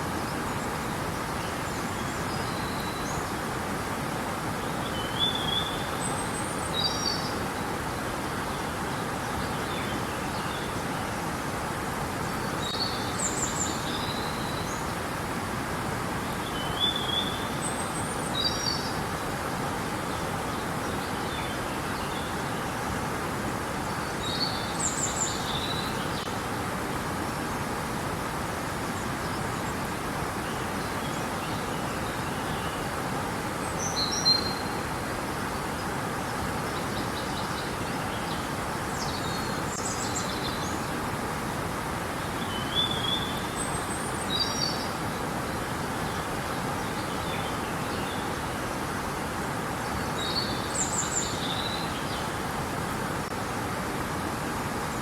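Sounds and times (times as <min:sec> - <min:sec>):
flowing river water: 0:00.0 - 0:55.0
songbird chirps: 0:04.6 - 0:07.6, 0:12.2 - 0:15.0, 0:16.2 - 0:19.2, 0:23.8 - 0:26.4, 0:33.6 - 0:35.0, 0:35.6 - 0:41.1, 0:42.0 - 0:53.4.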